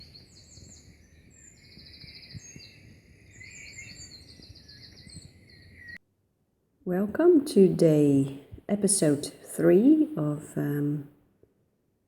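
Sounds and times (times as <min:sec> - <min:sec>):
birds chirping and singing: 0:00.0 - 0:06.0
faint background noise: 0:00.0 - 0:12.0.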